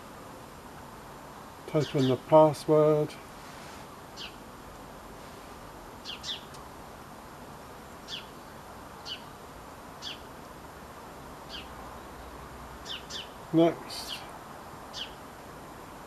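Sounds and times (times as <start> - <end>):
steady background hiss: 0.0 - 16.0
small bird calling: 4.1 - 4.5, 6.0 - 6.6, 8.0 - 10.4, 11.4 - 14.3, 14.9 - 15.3.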